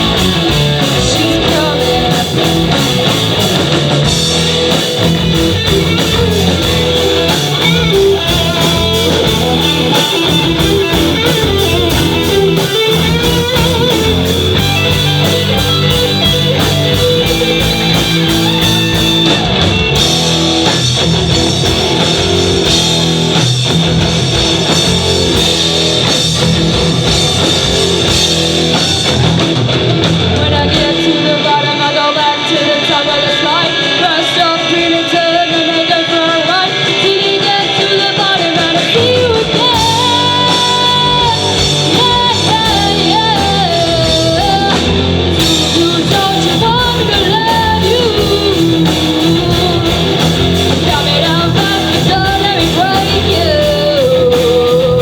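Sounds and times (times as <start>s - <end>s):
bass guitar: 0.0s - 55.0s
drum kit: 0.0s - 55.0s
electric guitar: 0.0s - 55.0s.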